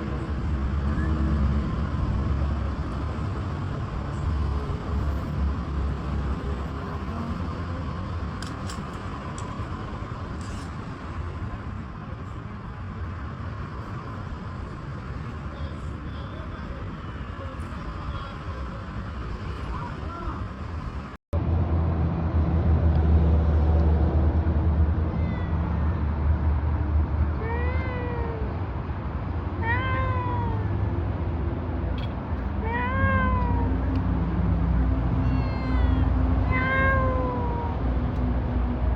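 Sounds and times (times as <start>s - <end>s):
low rumble background noise: 0.0s - 38.9s
cat meowing: 25.1s - 26.1s, 27.4s - 28.6s, 29.6s - 30.9s, 32.6s - 33.9s, 35.2s - 37.9s.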